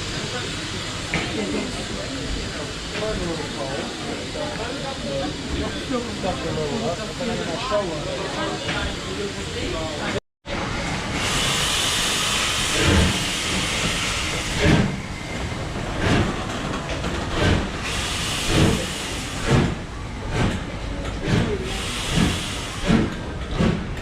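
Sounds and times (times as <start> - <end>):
steam hissing: 10.8 - 16.5, 17.3 - 24.0.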